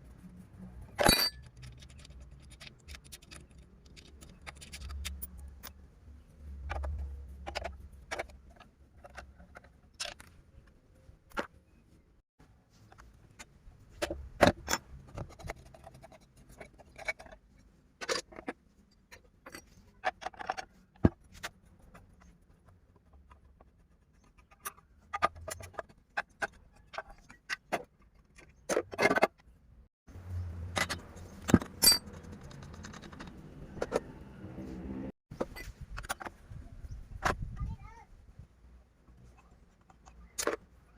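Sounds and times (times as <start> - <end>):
metal parts clinking: 1.0 - 5.8, 30.7 - 34.0.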